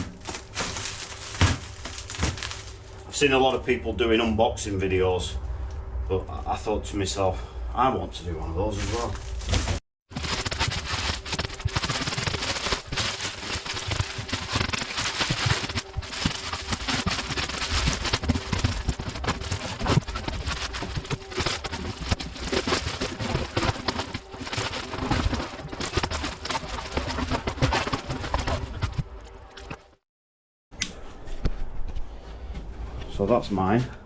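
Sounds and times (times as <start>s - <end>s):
cardboard packaging tearing: 0.0s - 2.9s, 8.6s - 29.1s.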